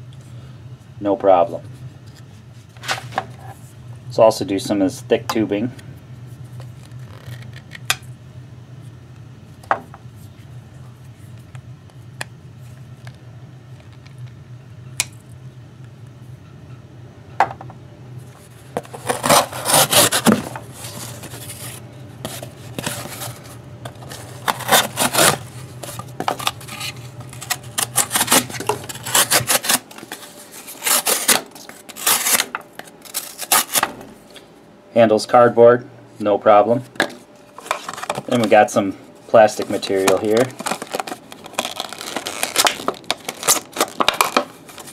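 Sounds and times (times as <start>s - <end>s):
low steady hum: 0.0s - 44.9s
knife slicing cardboard: 18.9s - 20.5s, 24.4s - 25.4s, 26.4s - 29.8s, 30.8s - 32.5s.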